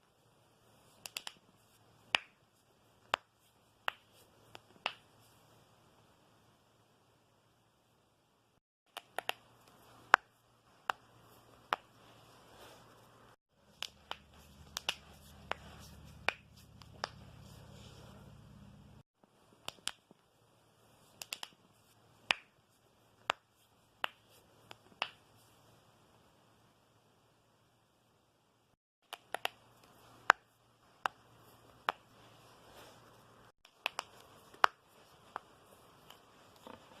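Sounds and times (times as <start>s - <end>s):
knuckles cracking: 13.7s - 15.6s.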